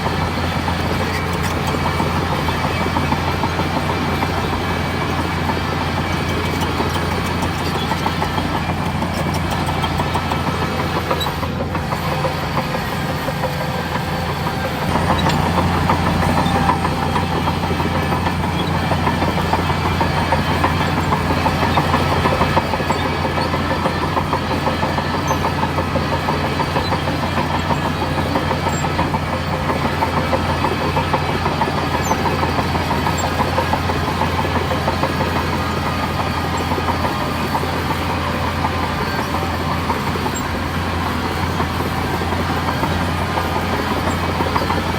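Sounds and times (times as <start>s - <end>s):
heavy diesel engine running: 0.0s - 44.9s.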